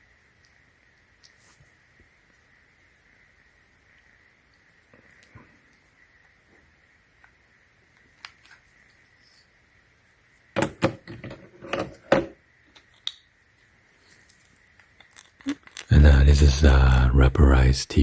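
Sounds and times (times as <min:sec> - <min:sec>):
small hard objects clicking: 0:14.2 - 0:15.9.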